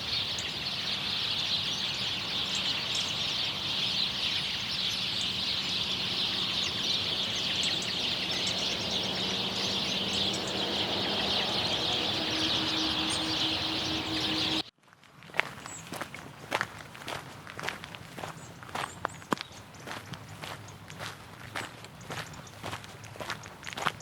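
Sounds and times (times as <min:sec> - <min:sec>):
chorus of birds chattering: 0:00.0 - 0:14.7, 0:18.2 - 0:24.0
footsteps: 0:14.8 - 0:24.0.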